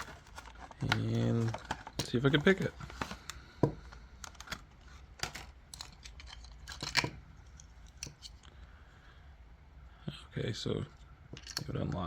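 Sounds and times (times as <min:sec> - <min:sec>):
packaging rustling and tearing: 0:00.0 - 0:03.4.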